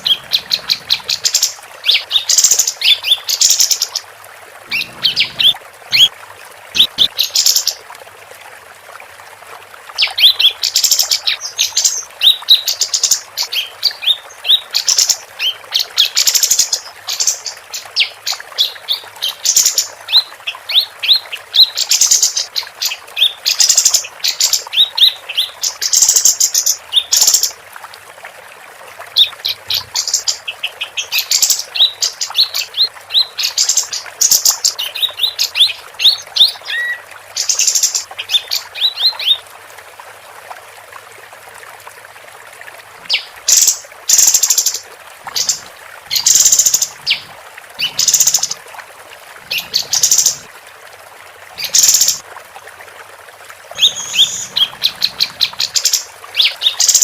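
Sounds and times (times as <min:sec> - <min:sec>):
songbird chirping and trilling: 0:04.7 - 0:06.1, 0:53.8 - 0:57.0.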